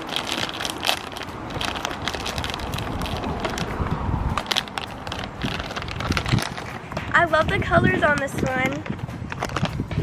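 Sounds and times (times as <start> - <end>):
plastic packaging crackling: 0.0 - 10.0.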